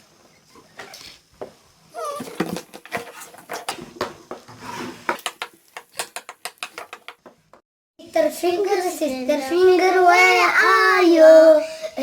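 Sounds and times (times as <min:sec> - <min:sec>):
plastic toys clicking and clattering: 0:05.1 - 0:07.2.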